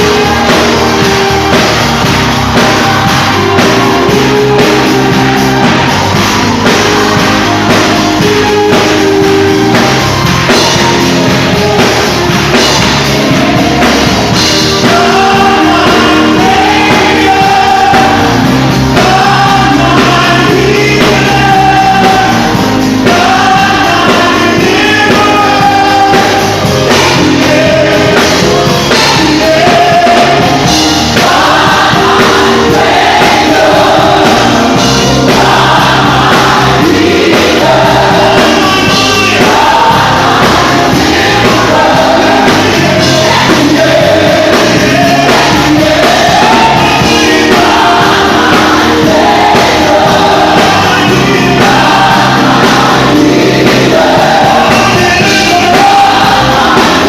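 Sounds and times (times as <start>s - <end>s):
backing choir singing: 0.0s - 57.0s
band with drum kit: 0.0s - 57.0s
lead singer: 0.0s - 57.0s.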